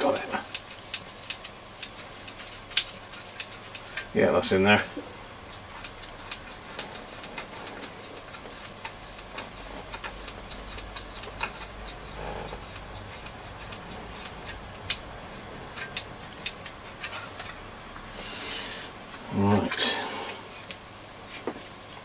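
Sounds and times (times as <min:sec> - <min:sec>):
small parts and tools clicking: 0:00.0 - 0:04.2, 0:05.5 - 0:17.7.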